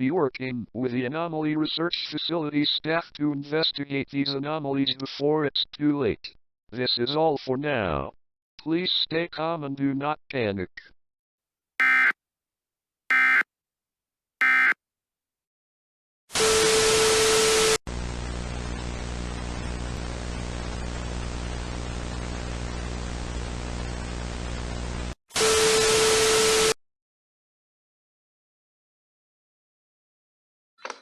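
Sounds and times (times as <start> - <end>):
chirping digital data tones: 11.8 - 12.1, 13.1 - 13.4, 14.4 - 14.8.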